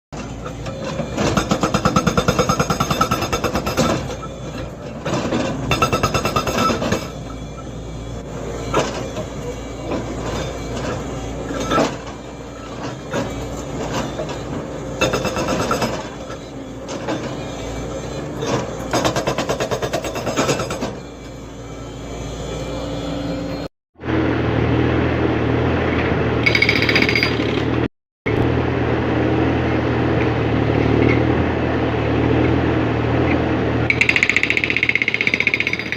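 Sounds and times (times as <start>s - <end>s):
diesel engine running: 0.2s - 35.9s
hydraulic breaker hammer pounding: 0.5s - 7.6s, 8.6s - 21.1s, 26.4s - 27.9s, 33.9s - 35.9s.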